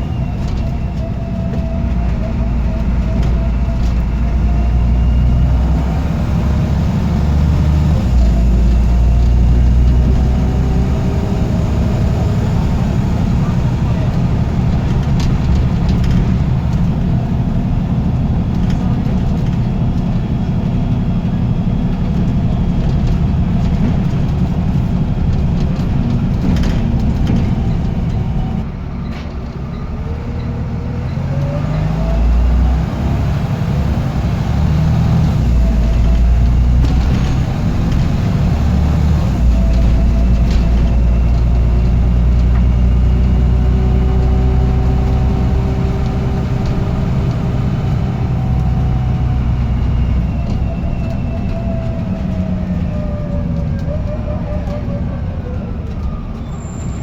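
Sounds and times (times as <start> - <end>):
diesel bus engine: 0.0 - 57.0.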